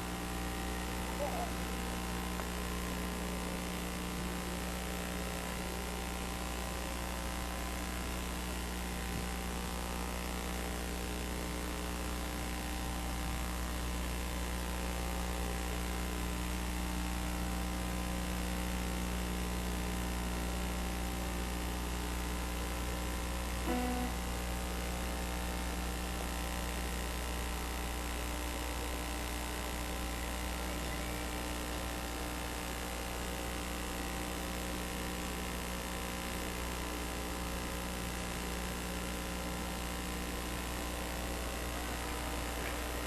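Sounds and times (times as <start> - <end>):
electrical hum and buzz: 0.0 - 43.0
background hiss: 23.6 - 24.5.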